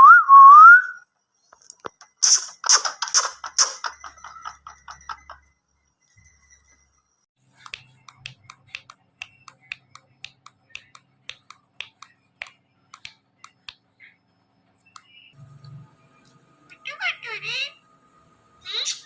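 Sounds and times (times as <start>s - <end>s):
rapid sharp tapping: 1.9s - 4.8s
faint low hum: 6.0s - 19.0s.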